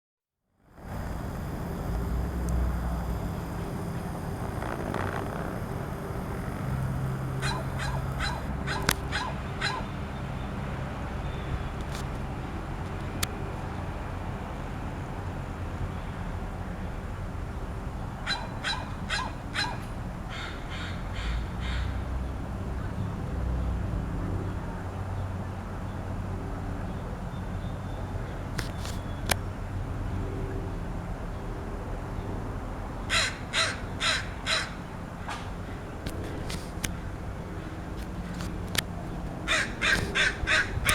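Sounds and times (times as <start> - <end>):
crow calling in short notes: 39.5 - 40.9.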